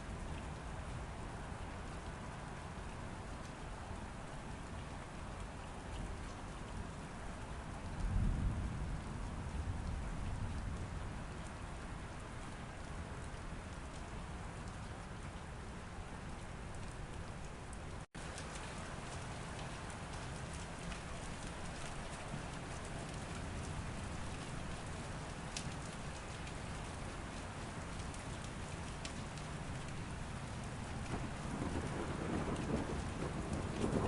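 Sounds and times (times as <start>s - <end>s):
steady rain falling: 0.0s - 34.0s
low rumble of thunder: 7.9s - 12.2s, 29.7s - 34.0s.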